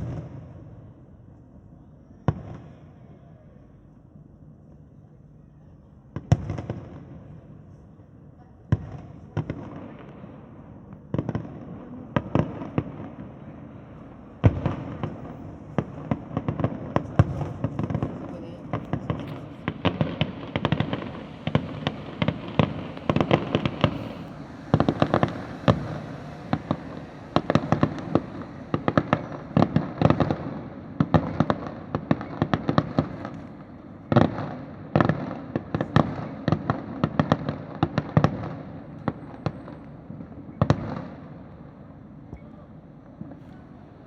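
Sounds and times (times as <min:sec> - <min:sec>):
fireworks bangs: 0:08.7 - 0:41.5.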